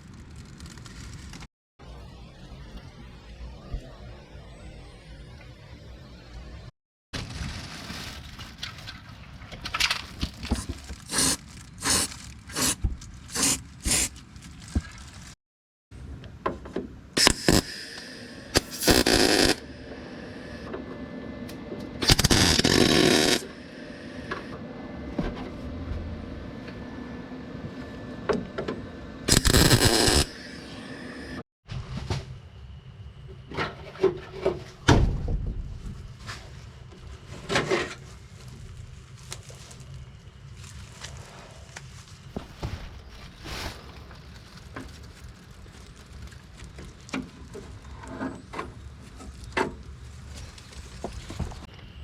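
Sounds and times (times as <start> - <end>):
harsh metal grinding bursts: 22.0 - 23.6, 29.3 - 30.6.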